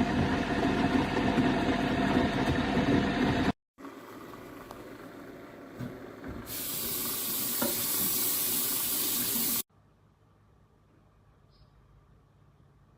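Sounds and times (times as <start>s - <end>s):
coffee maker water hissing: 3.8s - 5.4s, 6.3s - 9.7s.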